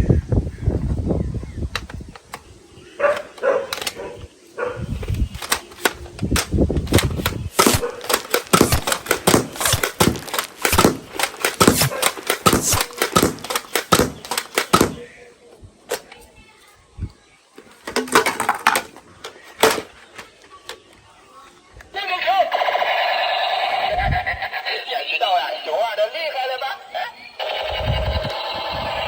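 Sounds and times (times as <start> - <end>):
toy guns firing: 3.1 - 4.1, 5.1 - 15.2, 17.9 - 20.8, 27.3 - 29.0.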